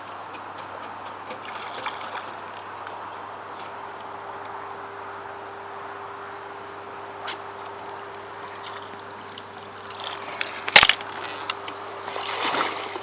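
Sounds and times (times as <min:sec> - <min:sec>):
fish splashing in water: 0:01.3 - 0:02.9, 0:07.3 - 0:13.0.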